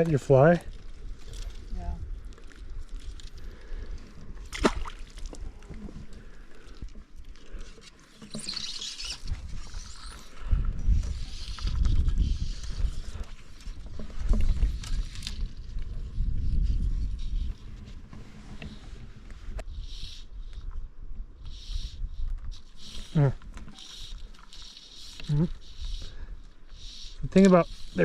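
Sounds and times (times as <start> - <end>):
wind gusting on microphone: 9.0 - 24.3.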